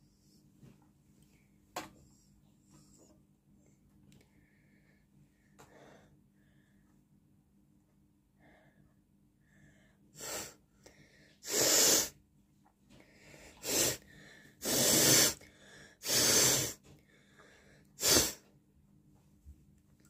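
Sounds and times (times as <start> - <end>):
person blowing air through nose: 11.4 - 12.2, 13.6 - 14.0, 14.6 - 15.4, 16.0 - 16.9, 18.0 - 18.4.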